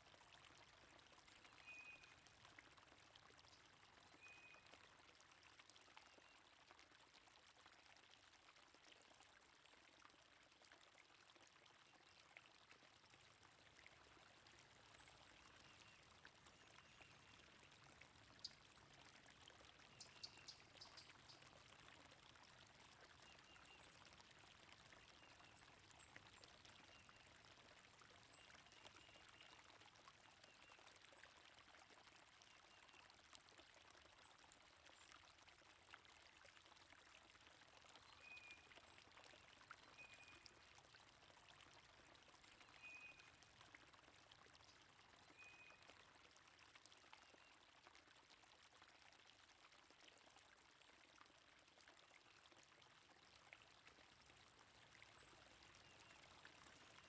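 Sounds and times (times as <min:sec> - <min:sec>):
stream flowing: 0:12.3 - 0:32.4, 0:53.5 - 0:57.0.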